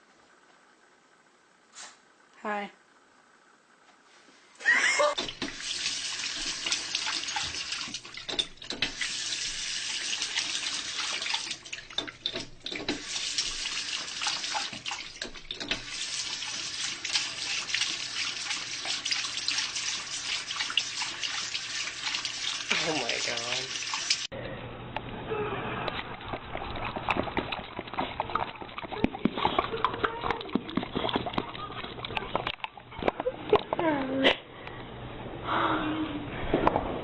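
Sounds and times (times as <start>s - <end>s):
tap water running and splashing: 5.2s - 24.3s.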